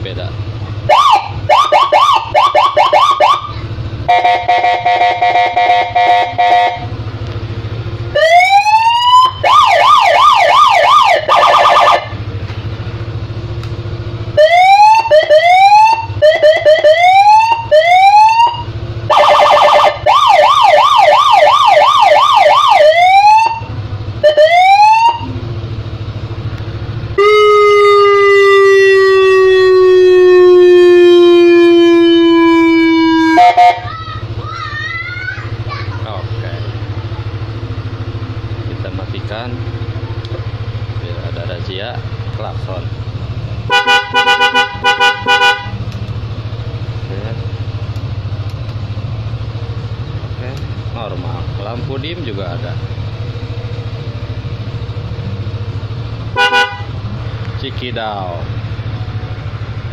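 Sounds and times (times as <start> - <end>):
electronic siren cycling tones: 0.9 - 3.5, 8.1 - 12.2, 14.4 - 25.3, 27.2 - 33.8.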